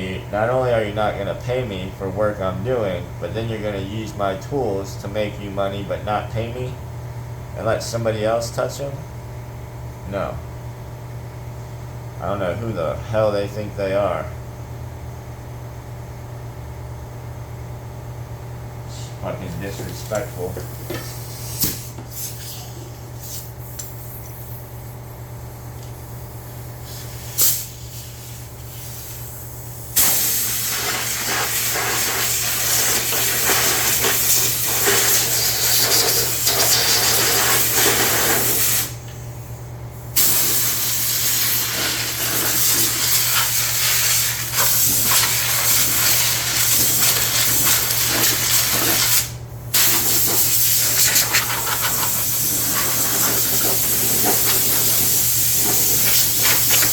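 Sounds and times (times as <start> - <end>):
steady low hum: 0.0 - 56.9
compressed air hissing: 21.1 - 24.6, 26.8 - 39.2, 40.0 - 56.9.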